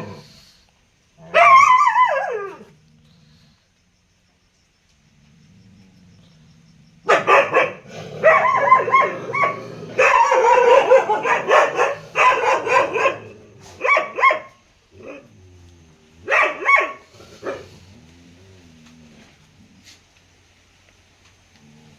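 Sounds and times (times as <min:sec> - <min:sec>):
dog barking: 0:01.3 - 0:02.6, 0:07.0 - 0:15.2, 0:16.2 - 0:17.8.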